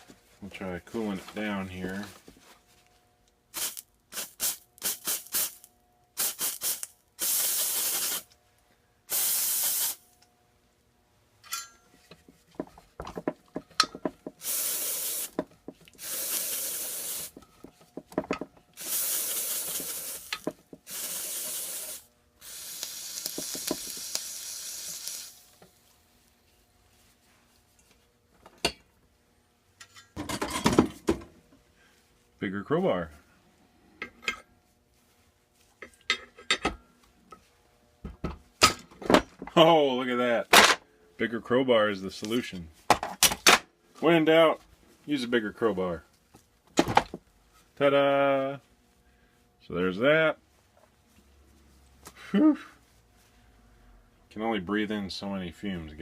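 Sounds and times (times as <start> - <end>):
aerosol spray can hissing: 3.6 - 5.6, 6.2 - 8.3, 9.1 - 10.0, 14.4 - 15.4, 16.0 - 17.4, 18.8 - 25.5.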